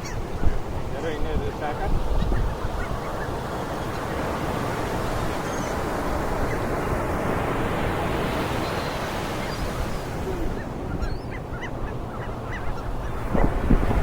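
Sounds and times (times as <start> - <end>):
bird chirping: 0.0 - 1.1, 8.6 - 13.4
ocean surf: 0.0 - 14.0.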